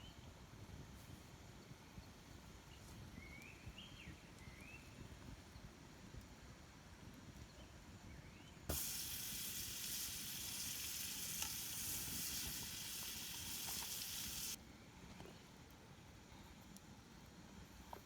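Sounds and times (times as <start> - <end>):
sizzling hiss: 8.7 - 14.6.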